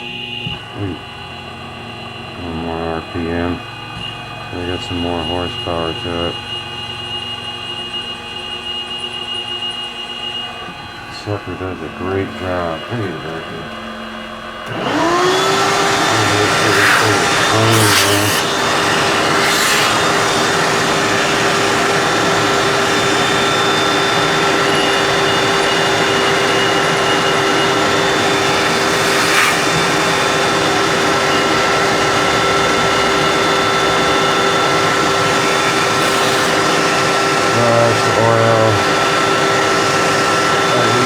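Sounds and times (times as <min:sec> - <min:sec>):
shop vacuum running: 0:00.0 - 0:41.0
reamer cutting metal: 0:11.1 - 0:41.0
machine spindle turning: 0:13.9 - 0:40.1.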